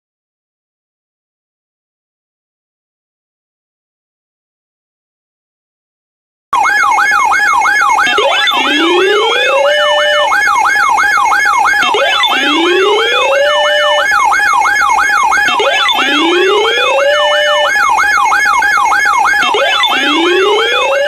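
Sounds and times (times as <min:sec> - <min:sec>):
electronic yelping siren: 0:06.6 - 0:21.0
rising siren wail: 0:06.6 - 0:21.0.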